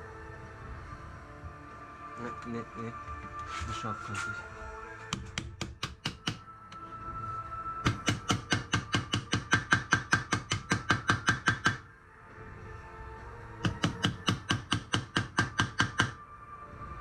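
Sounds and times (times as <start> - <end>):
hammer striking steel rivets: 7.9 - 11.8, 13.6 - 16.2.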